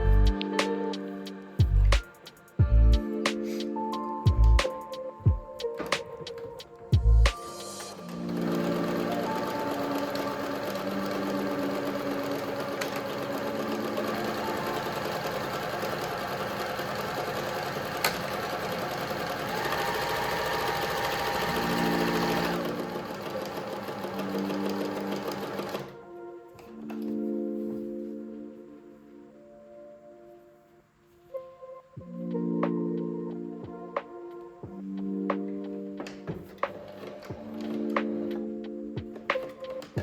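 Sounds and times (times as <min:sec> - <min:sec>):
sewing machine stitching: 0:07.8 - 0:26.0.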